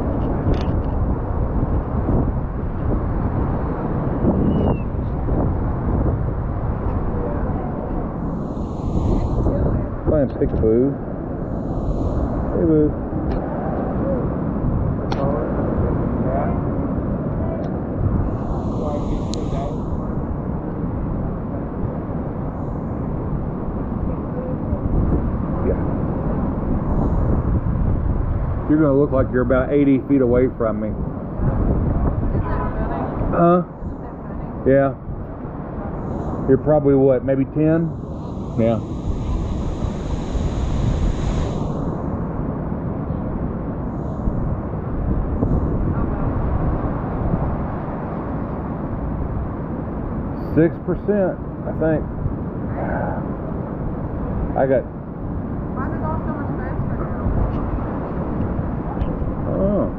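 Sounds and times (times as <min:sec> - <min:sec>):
muffled low rumble: 0:00.0 - 0:48.6, 0:55.6 - 0:59.9
high hiss: 0:08.1 - 0:10.1, 0:11.3 - 0:13.0, 0:18.2 - 0:20.2, 0:36.0 - 0:42.4, 0:43.8 - 0:44.7.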